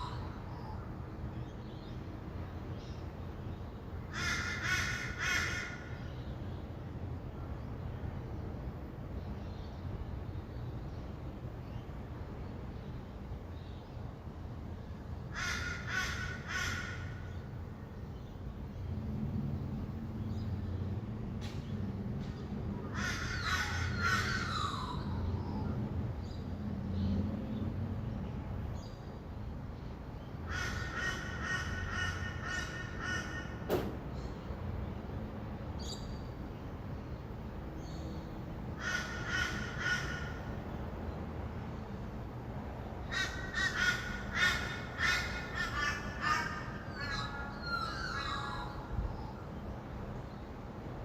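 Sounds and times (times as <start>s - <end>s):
distant traffic rumble: 0.0s - 51.0s
lorikeets calling: 22.8s - 26.4s, 43.1s - 50.5s.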